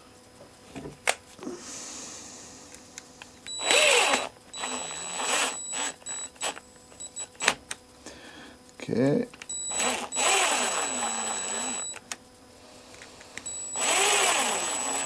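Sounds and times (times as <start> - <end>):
powered screwdriver whining: 3.5 - 7.6, 9.5 - 12.2, 13.4 - 15.0.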